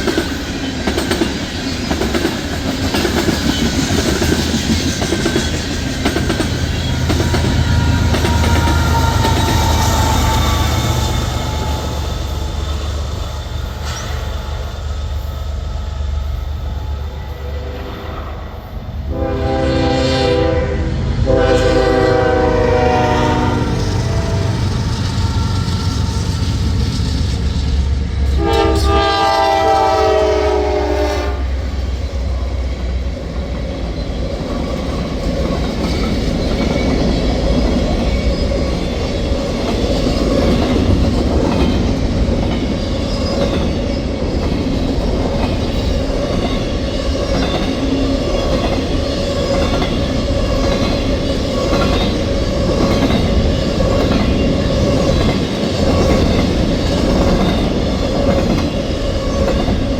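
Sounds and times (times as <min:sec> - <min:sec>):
train wheels clacking on rails: 0:00.0 - 0:18.3, 0:21.3 - 0:30.7, 0:31.5 - 0:59.9
train air horn: 0:07.3 - 0:12.1, 0:17.1 - 0:26.0, 0:28.3 - 0:31.6.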